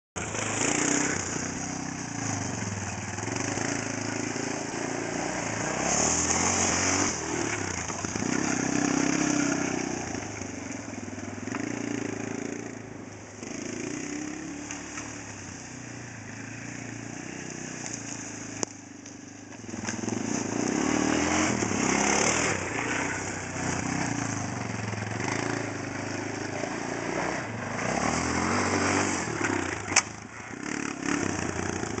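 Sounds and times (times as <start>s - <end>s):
quad bike engine revving: 0.2s - 32.0s
sharp crack: 28.7s - 30.3s.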